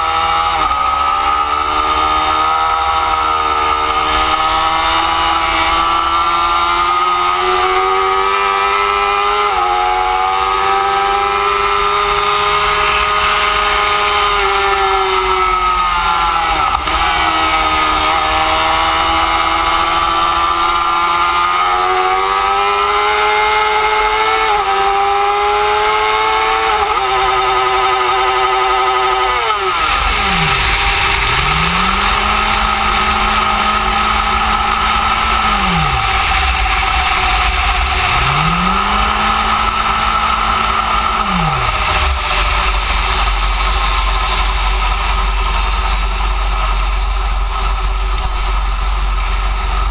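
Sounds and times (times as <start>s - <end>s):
motorcycle engine revving: 0.0s - 49.9s
rushing noise: 28.8s - 49.9s.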